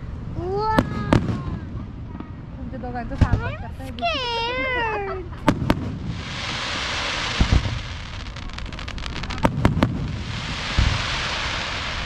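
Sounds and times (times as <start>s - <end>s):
fireworks low booms: 0.0s - 2.5s, 5.4s - 12.0s
fireworks crackle: 3.2s - 12.0s.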